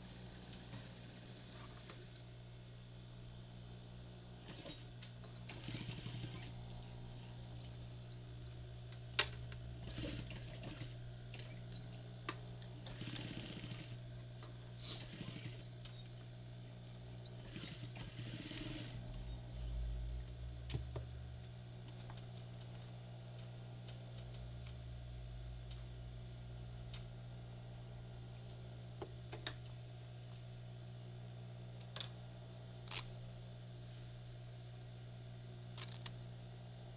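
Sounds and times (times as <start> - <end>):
steady motor hum: 0.0 - 36.9
sewing machine stitching: 5.5 - 6.6, 9.8 - 11.6, 12.8 - 14.0, 14.8 - 16.0, 17.4 - 19.2.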